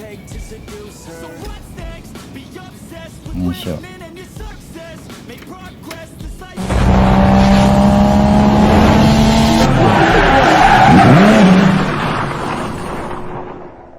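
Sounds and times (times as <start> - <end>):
tyres skidding: 0.0 - 13.9
loud car engine: 6.6 - 13.9.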